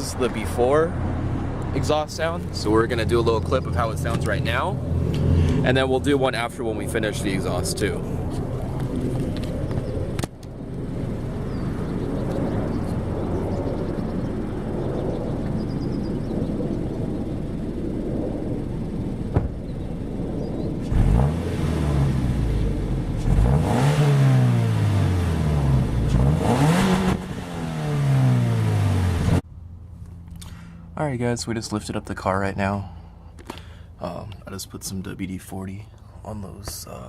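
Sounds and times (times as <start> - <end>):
car engine revving: 0.0 - 13.6, 20.8 - 29.4
car engine idling: 0.0 - 15.8.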